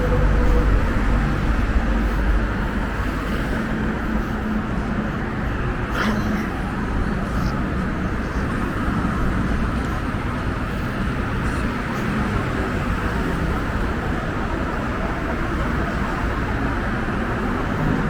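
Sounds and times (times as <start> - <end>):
city street traffic: 0.0 - 18.0.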